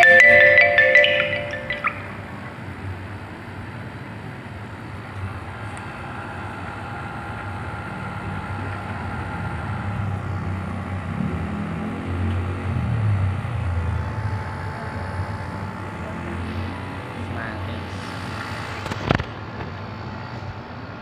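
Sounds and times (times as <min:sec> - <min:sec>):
chime-like tone: 0:00.0 - 0:02.4
faint steady tones: 0:00.0 - 0:02.8.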